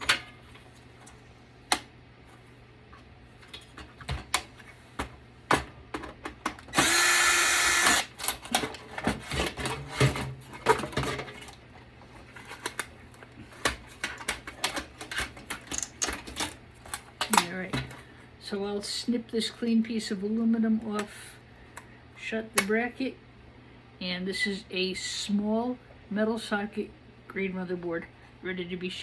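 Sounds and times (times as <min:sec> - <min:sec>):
cordless drill whirring: 0:06.7 - 0:08.1.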